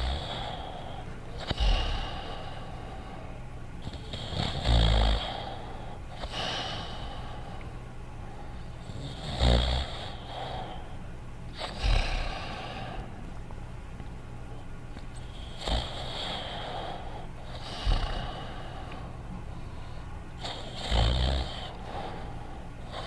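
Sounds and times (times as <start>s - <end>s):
cartoon dog snoring: 0.0s - 2.9s, 3.8s - 7.1s, 8.8s - 10.6s, 11.5s - 13.0s, 15.2s - 18.8s, 20.4s - 22.3s
soft hissing breaths: 0.0s - 23.0s.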